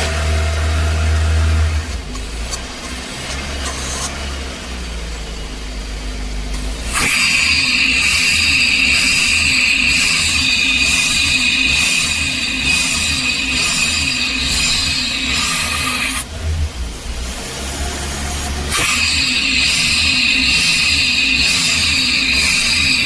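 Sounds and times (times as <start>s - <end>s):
van engine racing: 0.0s - 23.0s
high whine: 6.9s - 17.4s, 18.1s - 23.0s.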